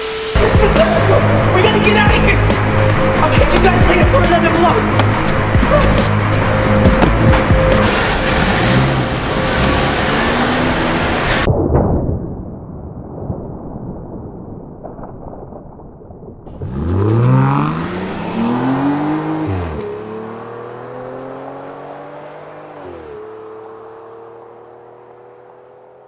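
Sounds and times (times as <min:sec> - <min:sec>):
engine revving: 0:00.4 - 0:11.5, 0:16.5 - 0:26.0.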